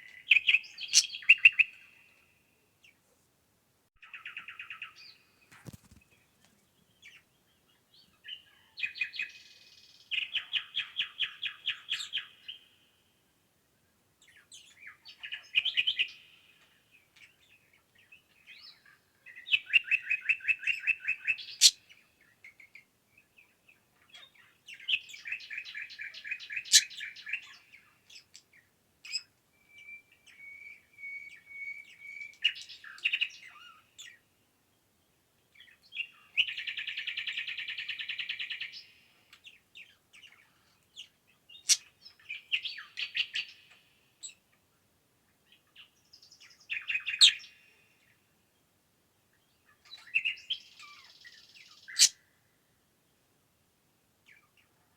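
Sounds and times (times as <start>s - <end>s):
songbirds trilling: 0.0s - 2.2s, 23.4s - 34.2s.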